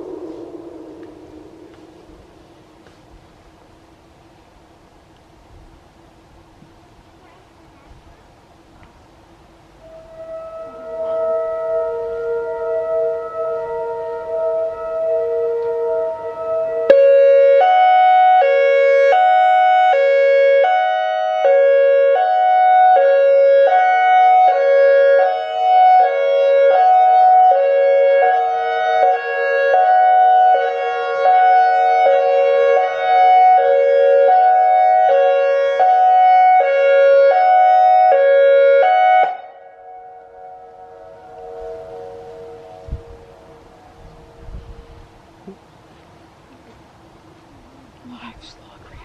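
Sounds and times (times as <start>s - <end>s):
two-tone hi-lo siren: 0.0s - 2.4s, 9.8s - 45.1s.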